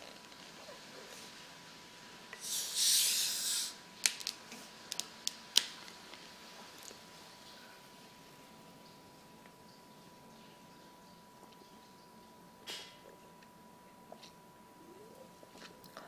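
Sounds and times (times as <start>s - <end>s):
hiss of escaping gas: 2.4s - 3.8s.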